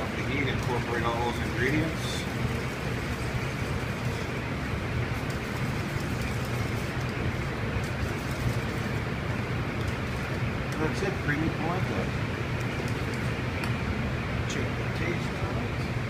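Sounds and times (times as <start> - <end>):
ventilation fan rumbling: 0.0 - 16.0.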